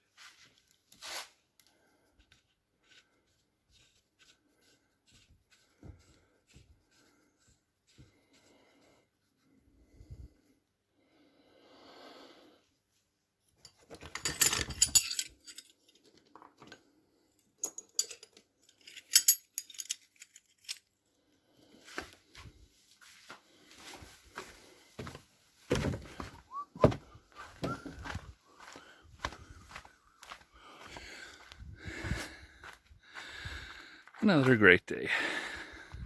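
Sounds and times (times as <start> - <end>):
metal tools clinking and rattling: 13.6 - 16.2, 17.6 - 20.9.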